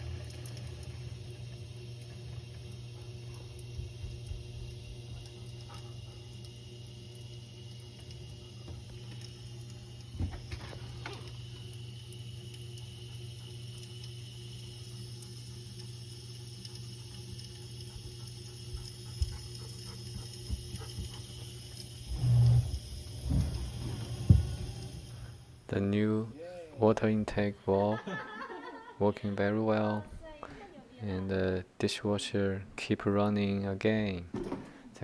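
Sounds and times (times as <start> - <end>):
dishwasher humming: 0.0 - 25.8
water intake valve: 0.0 - 25.9.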